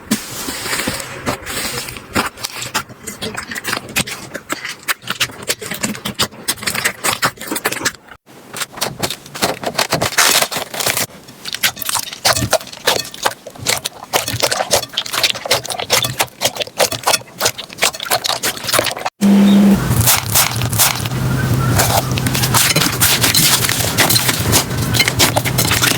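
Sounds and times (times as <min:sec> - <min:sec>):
slime crackling and popping: 0:20.0 - 0:25.9.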